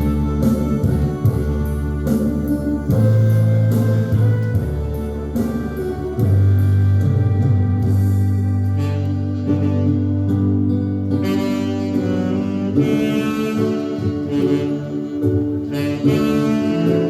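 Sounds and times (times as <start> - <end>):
drum and cymbal hits: 0.0 - 9.0
heavy bass line: 0.0 - 17.0
held chords: 0.0 - 17.0.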